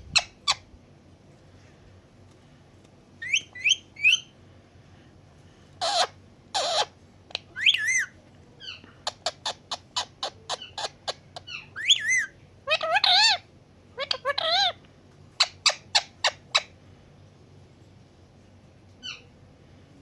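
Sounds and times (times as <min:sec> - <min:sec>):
parrot chirping and squawking: 0:00.1 - 0:00.6, 0:03.2 - 0:04.3, 0:05.8 - 0:14.8, 0:15.4 - 0:16.7.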